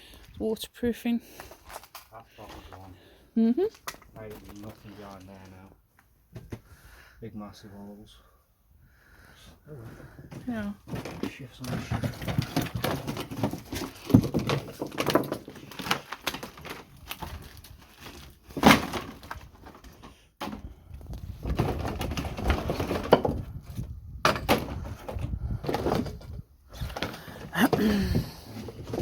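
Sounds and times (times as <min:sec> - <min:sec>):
wooden boards scraping and creaking: 0:09.9 - 0:29.0
sharp wood crack: 0:18.4 - 0:19.7.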